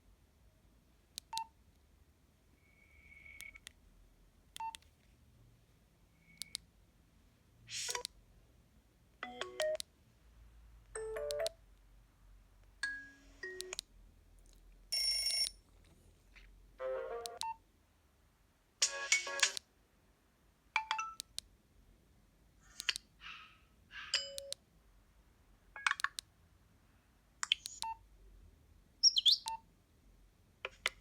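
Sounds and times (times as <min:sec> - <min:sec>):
keypad beeps: 0:03.1 - 0:03.7, 0:04.6 - 0:04.8, 0:09.2 - 0:09.8, 0:11.0 - 0:11.6, 0:12.8 - 0:13.8, 0:15.0 - 0:15.6, 0:17.2 - 0:17.6, 0:24.2 - 0:24.6
phone ringtones playing: 0:11.0 - 0:11.6, 0:15.0 - 0:15.6.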